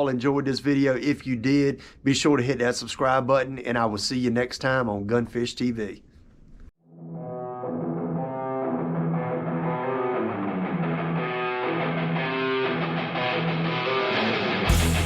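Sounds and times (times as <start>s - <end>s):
guitar playing repeating pattern: 6.9s - 15.0s.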